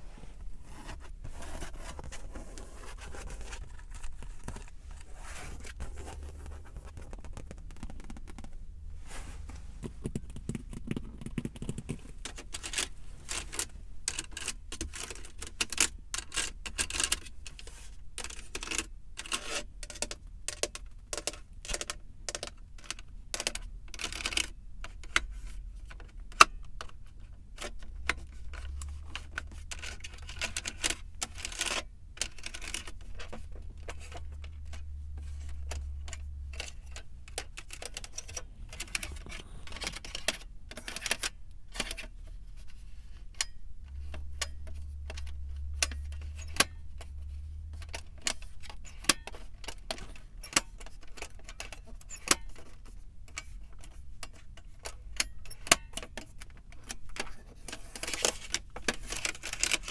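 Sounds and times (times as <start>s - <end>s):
scratching and rubbing on car: 0.1s - 14.2s.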